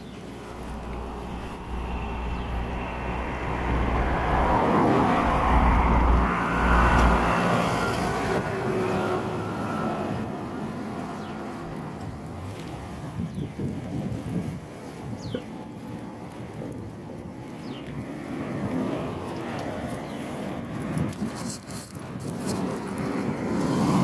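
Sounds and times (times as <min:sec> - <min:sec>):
vehicle passing by: 0:00.2 - 0:13.2.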